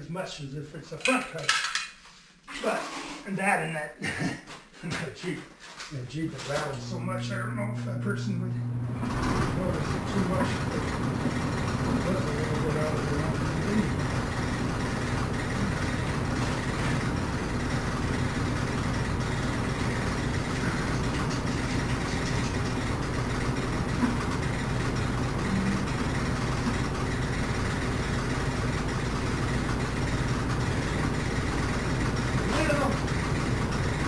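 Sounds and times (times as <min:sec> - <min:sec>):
motor humming: 0:06.8 - 0:34.0.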